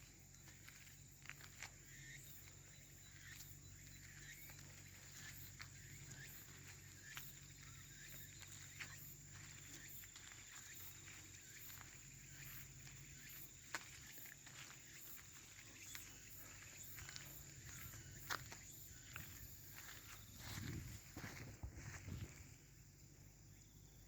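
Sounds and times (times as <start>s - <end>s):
steady high-pitched hum: 0.0s - 24.0s.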